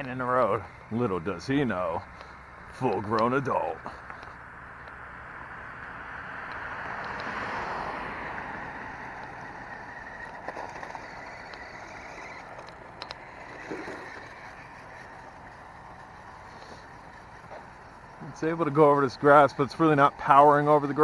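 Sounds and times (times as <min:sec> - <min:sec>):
car passing: 0:00.0 - 0:21.0
toy truck electric motor whine: 0:08.7 - 0:21.0.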